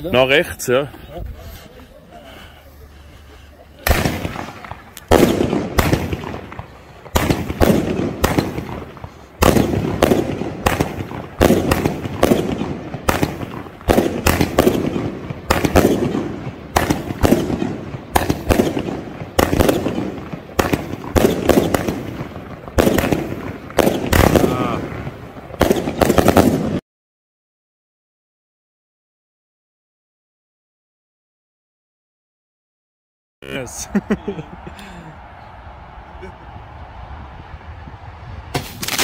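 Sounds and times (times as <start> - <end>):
firework bangs with rolling echo: 3.8 - 26.8, 36.8 - 39.0.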